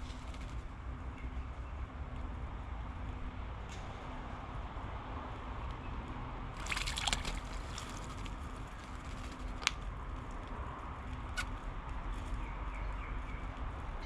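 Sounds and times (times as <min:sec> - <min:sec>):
low background noise: 0:00.0 - 0:14.0
bird splashing in water: 0:06.6 - 0:08.4.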